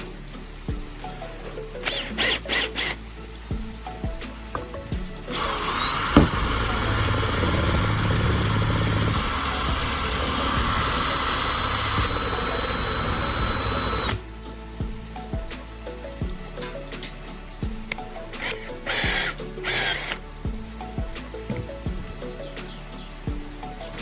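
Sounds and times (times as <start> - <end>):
power drill grinding glass: 1.0 - 3.0, 5.3 - 14.2, 18.4 - 20.2.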